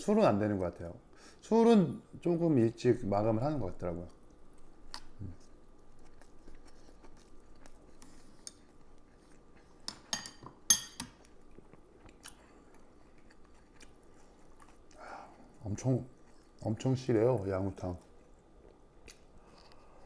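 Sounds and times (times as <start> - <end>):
person chewing: 4.0 - 16.9, 17.8 - 20.0.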